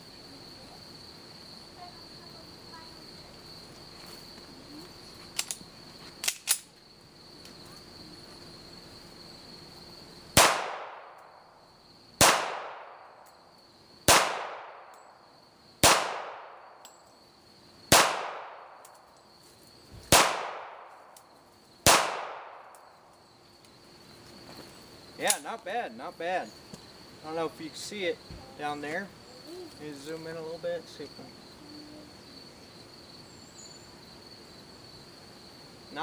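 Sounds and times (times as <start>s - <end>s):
crickets chirping: 0.0s - 36.0s
pistol shots with echo: 10.4s - 11.2s, 12.2s - 13.0s, 14.1s - 14.9s, 15.8s - 16.7s, 17.9s - 18.8s, 20.1s - 21.0s, 21.8s - 22.8s.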